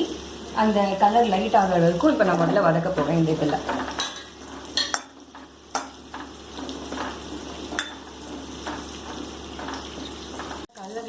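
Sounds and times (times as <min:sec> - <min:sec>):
onions sizzling in oil: 0:00.0 - 0:11.0
spatula scraping and tapping pan: 0:02.5 - 0:10.7.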